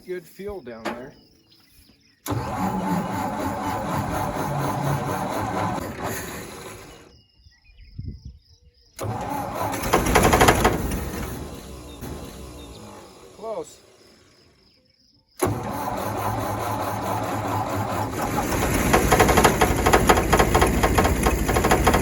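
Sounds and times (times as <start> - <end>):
engine cranking on starter: 2.2 - 7.1, 9.0 - 14.0, 15.4 - 22.0.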